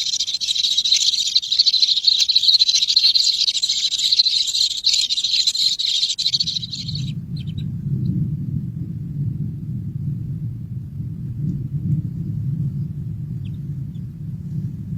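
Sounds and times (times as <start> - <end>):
high-pitched bird chirping: 0.0 - 7.7
low rumble: 6.2 - 14.9.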